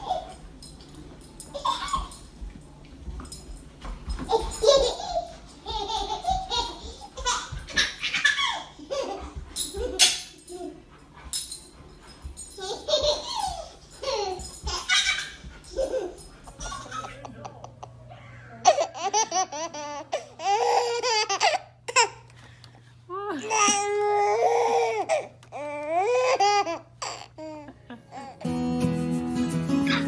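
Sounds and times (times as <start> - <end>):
person laughing: 27.4 - 28.4.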